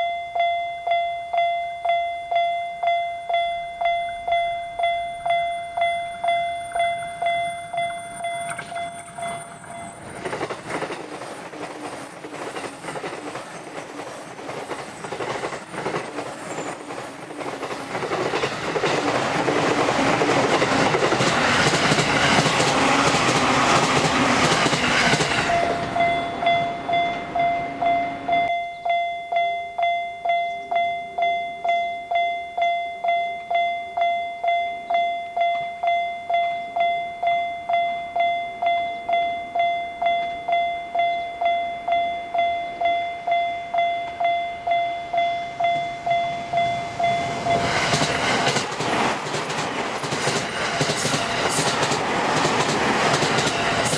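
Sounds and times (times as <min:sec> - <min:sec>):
level-crossing warning bell: 0:00.0 - 0:53.9
train wheels clattering over rails: 0:06.2 - 0:28.3, 0:45.6 - 0:53.9.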